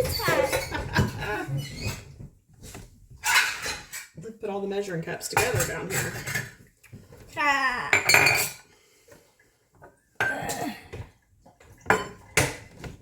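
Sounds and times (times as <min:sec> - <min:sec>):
utensils clattering on counter: 0:00.0 - 0:02.0, 0:03.2 - 0:04.2, 0:05.3 - 0:06.6, 0:07.9 - 0:08.7.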